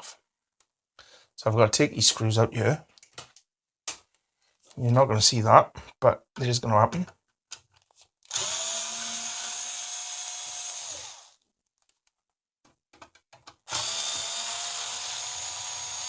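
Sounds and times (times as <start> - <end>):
power screwdriver whining: 8.3 - 11.4, 13.7 - 16.0.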